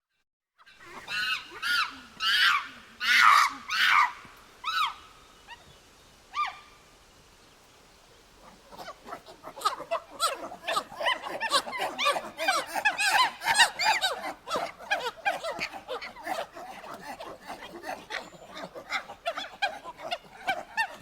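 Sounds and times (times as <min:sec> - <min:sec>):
monkey calling: 0:00.7 - 0:05.7, 0:08.4 - 0:21.0
monkey chattering: 0:08.4 - 0:21.0.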